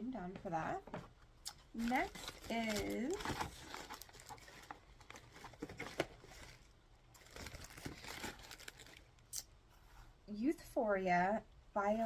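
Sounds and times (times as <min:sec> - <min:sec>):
packaging rustling and crinkling: 0:01.5 - 0:09.2.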